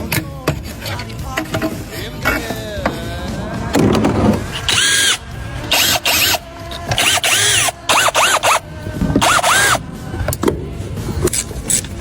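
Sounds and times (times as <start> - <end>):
background music: 0.0 - 12.0
power tool winding up and down: 4.1 - 8.6, 9.2 - 9.8.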